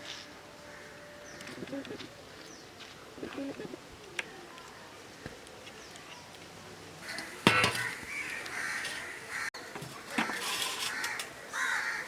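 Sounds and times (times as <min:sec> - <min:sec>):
crows cawing: 0:07.0 - 0:12.0.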